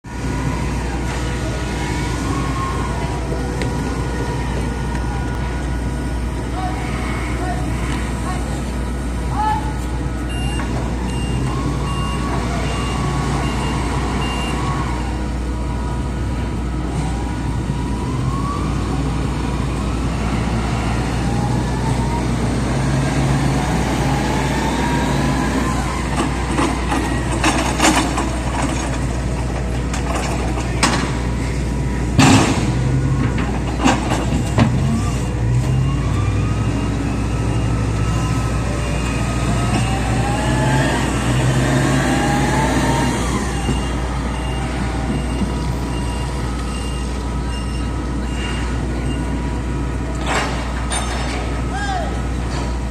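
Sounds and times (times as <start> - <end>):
vehicle engines revving: 0.0 - 52.9
repeating warning beep: 10.3 - 14.6, 43.6 - 49.4.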